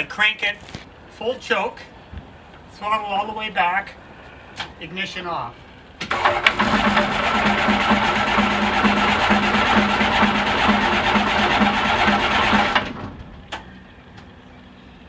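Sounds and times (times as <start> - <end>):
starter cranking engine: 6.0 - 14.2.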